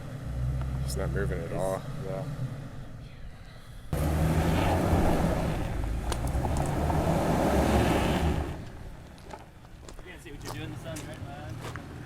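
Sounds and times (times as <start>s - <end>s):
truck engine straining under load: 3.9s - 9.9s.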